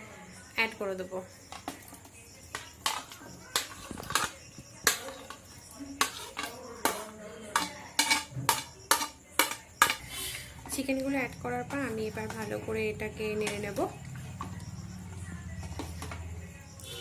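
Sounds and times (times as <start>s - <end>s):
utensil clinking against pan: 2.5s - 10.1s.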